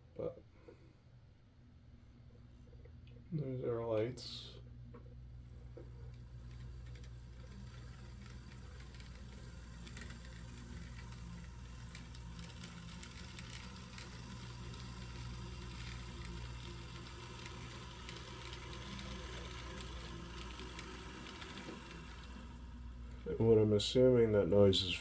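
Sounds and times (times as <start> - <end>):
model train motor hum: 4.4 - 25.0
small clicks and rattle: 4.9 - 23.3.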